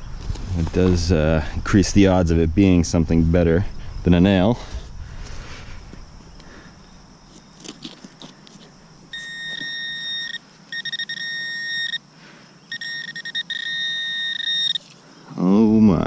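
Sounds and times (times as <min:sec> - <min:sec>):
metal detector high electronic tone: 0:09.1 - 0:15.0.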